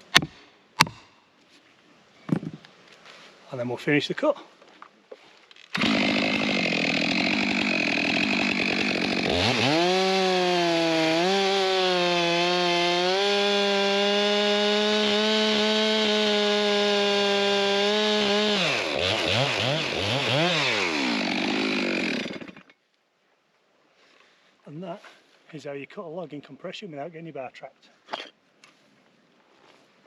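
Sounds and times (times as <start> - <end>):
chainsaw revving and cutting: 5.8 - 22.7.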